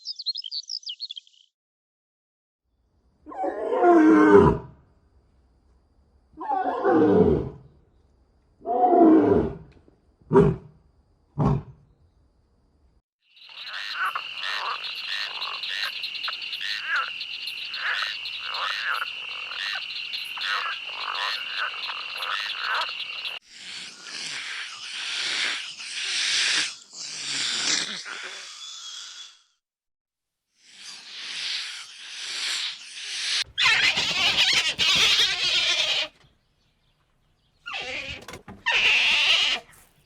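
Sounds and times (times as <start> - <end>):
animal calls: 13.4 - 29.4, 30.6 - 36.2, 37.6 - 40.0.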